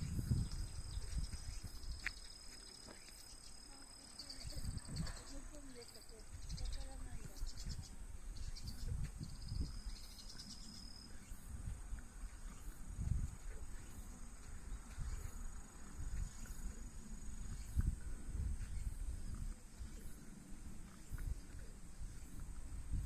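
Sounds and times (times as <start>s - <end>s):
crickets trilling: 0.0s - 23.0s.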